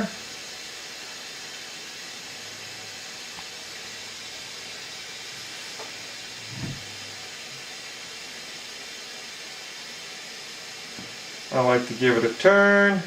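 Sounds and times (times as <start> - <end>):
background hiss: 0.0 - 13.0
soft thump: 6.5 - 6.9.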